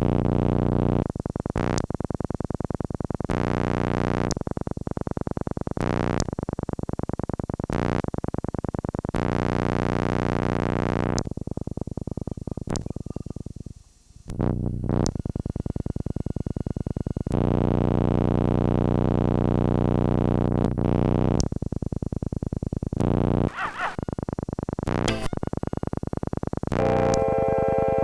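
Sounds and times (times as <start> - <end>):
synthesizer chord with stuttering: 26.8 - 28.0.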